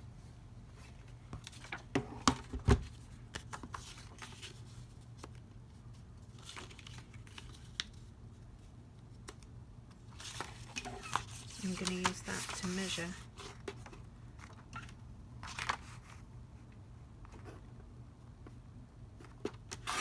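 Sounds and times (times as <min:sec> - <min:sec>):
paper rustle: 0:02.8 - 0:08.7, 0:10.1 - 0:16.2.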